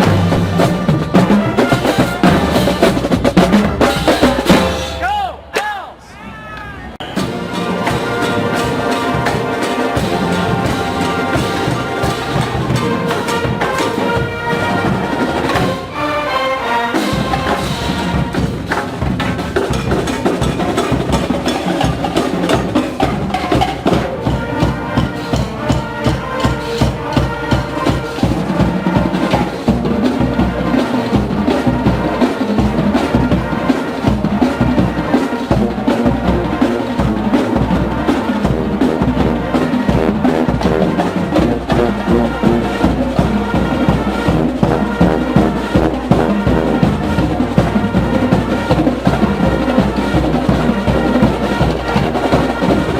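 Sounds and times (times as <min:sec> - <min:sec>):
heavy bass drum beat: 0:00.0 - 0:05.2
brass chords: 0:00.0 - 0:05.9, 0:07.0 - 0:52.9
marching band playing: 0:00.0 - 0:05.9, 0:07.0 - 0:52.9.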